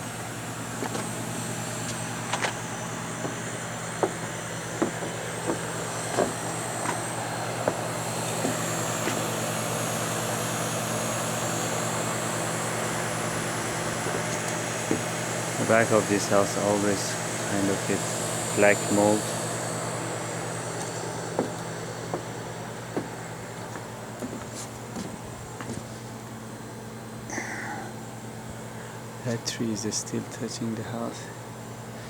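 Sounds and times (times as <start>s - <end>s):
hvac unit humming: 0.0s - 32.0s
footsteps: 0.8s - 1.1s, 3.2s - 9.4s, 20.8s - 22.3s, 22.9s - 26.1s.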